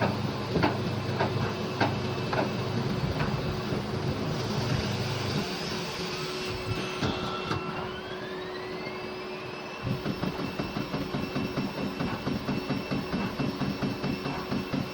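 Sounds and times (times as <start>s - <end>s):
spindle whine: 0.0s - 14.9s.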